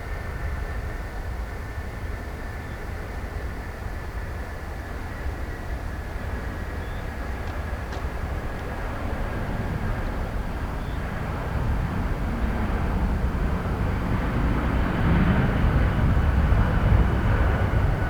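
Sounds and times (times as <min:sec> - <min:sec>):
distant jet engines rumbling: 0:04.8 - 0:18.0.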